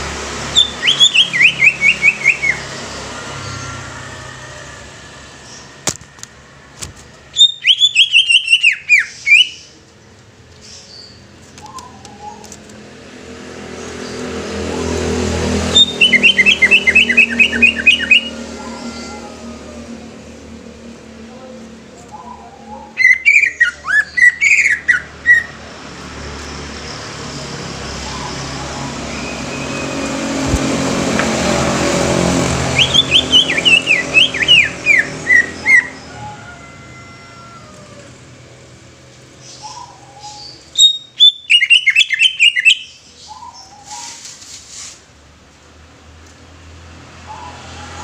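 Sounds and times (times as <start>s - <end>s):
bird whistled song: 0.6s - 2.8s, 7.3s - 9.7s, 11.0s - 12.4s, 15.8s - 18.4s, 22.8s - 25.6s, 32.8s - 36.0s, 39.5s - 44.2s
broad rushing noise: 25.6s - 35.9s.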